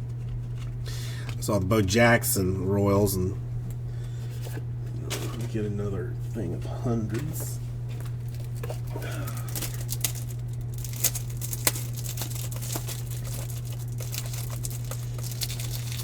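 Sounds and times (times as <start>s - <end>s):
low electrical hum: 0.0s - 16.0s
plastic packaging crinkling: 7.0s - 16.0s.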